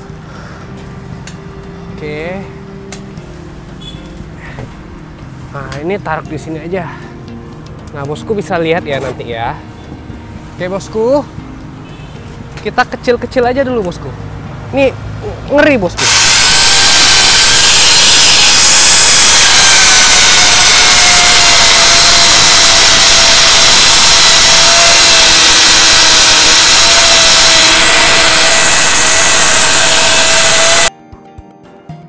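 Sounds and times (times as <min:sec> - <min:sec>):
angle grinder chainsaw cutting wood: 0:16.0 - 0:30.9.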